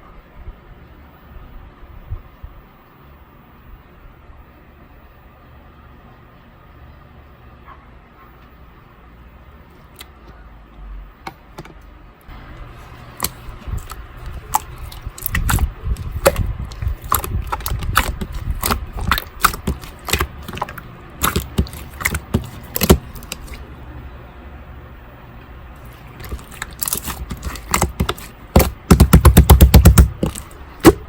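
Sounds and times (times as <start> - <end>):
slime popping and clicking: 13.2 - 23.6, 26.2 - 31.0.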